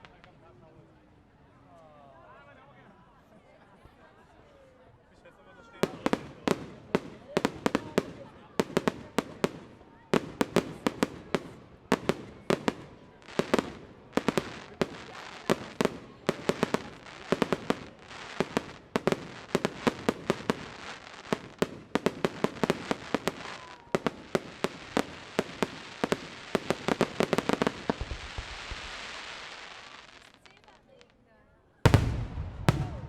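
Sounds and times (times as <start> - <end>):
fireworks bangs: 5.8 - 30.8, 31.9 - 33.0
fireworks crackling: 5.8 - 31.2, 31.9 - 33.0.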